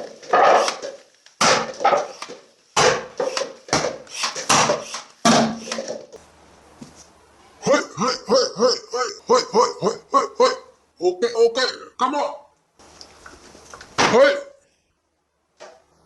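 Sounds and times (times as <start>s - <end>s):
sharp hard knocks and clacks: 1.4s - 2.1s, 2.8s - 6.0s
person chuckling: 7.6s - 10.7s.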